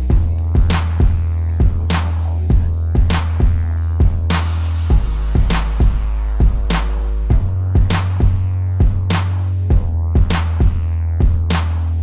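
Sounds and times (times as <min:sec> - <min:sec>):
kick drum thumps: 0:00.0 - 0:11.5
deep sustained bass: 0:00.0 - 0:12.0
snare-like hit: 0:00.6 - 0:02.3, 0:04.3 - 0:11.9.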